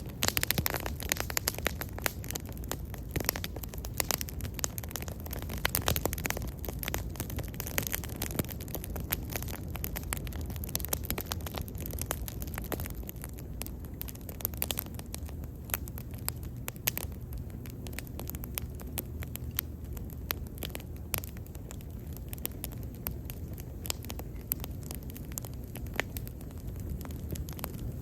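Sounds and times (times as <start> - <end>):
burning wood crackling and popping: 0.0 - 28.0
low rumble of flames: 0.0 - 28.0.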